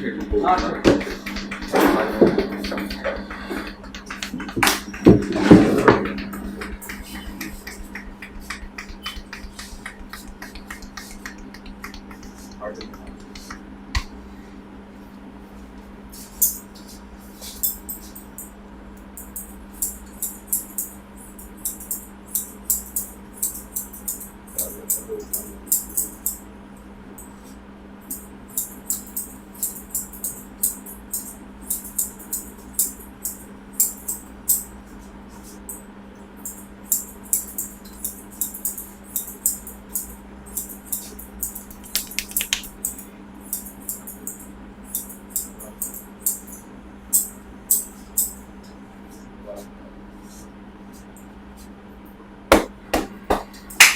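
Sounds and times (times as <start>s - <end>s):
hands tapping on head: 0.0s - 14.2s, 41.7s - 42.8s
steady low hum: 0.0s - 53.9s.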